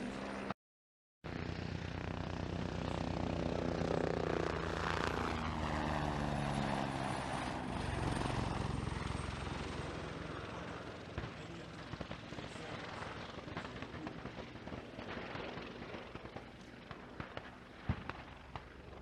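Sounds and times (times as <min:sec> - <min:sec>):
helicopter flying by: 0:00.0 - 0:00.6, 0:01.2 - 0:19.0.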